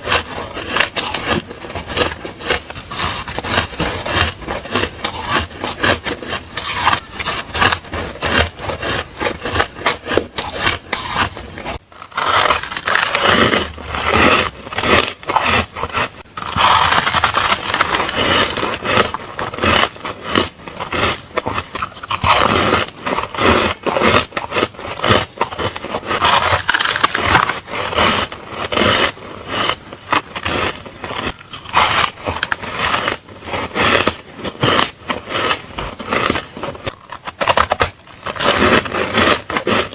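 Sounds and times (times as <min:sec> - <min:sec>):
ice being chewed crunching: 0:00.0 - 0:39.9.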